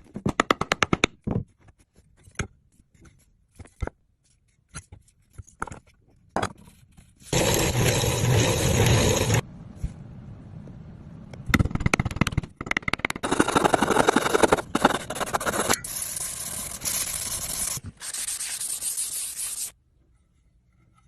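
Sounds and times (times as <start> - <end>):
sanding wood: 7.3 - 9.4, 13.2 - 19.7.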